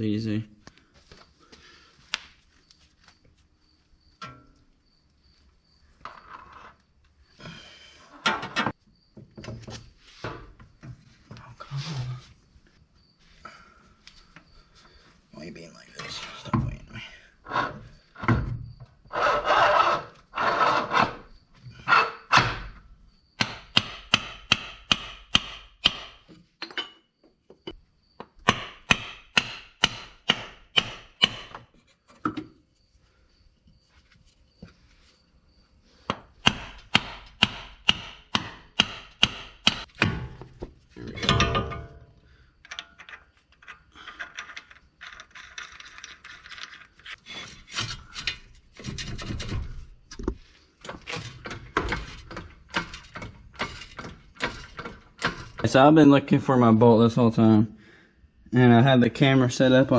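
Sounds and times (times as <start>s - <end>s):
rubbing and scraping: 19.1s - 22.3s, 45.0s - 55.7s.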